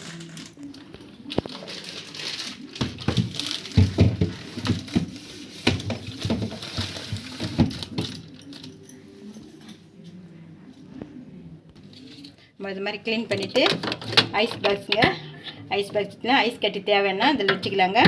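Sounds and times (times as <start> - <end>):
plastic boxes rustling and knocking: 1.3 - 8.6, 13.3 - 15.2.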